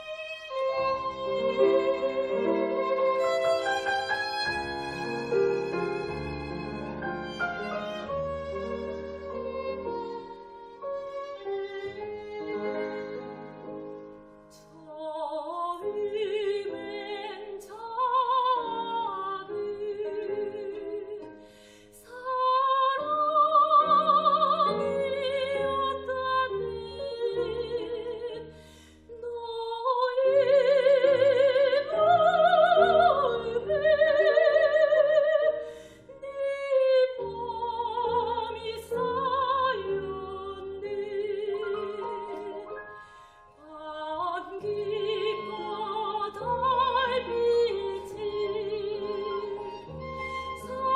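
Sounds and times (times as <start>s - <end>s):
piano: 0.0s - 50.9s
violin: 0.0s - 50.9s
soprano singing operatically: 14.6s - 50.9s
singer breathing: 21.4s - 22.0s, 28.5s - 29.1s, 35.6s - 36.1s, 42.9s - 43.6s.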